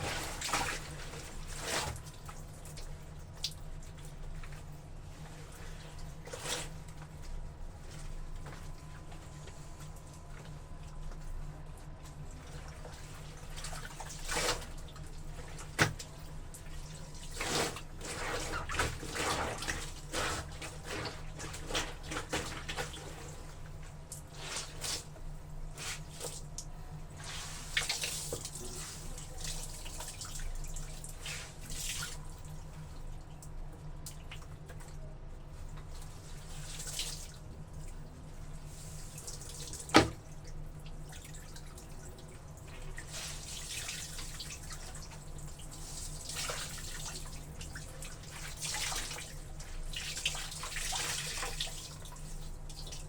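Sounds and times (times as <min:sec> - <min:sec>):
water splashing and dripping: 0:39.0 - 0:53.0.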